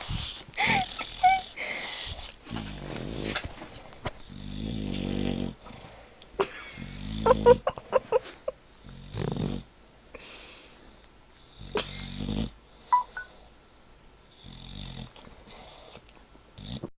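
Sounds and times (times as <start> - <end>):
dog breathing noisily: 0.0 - 4.4.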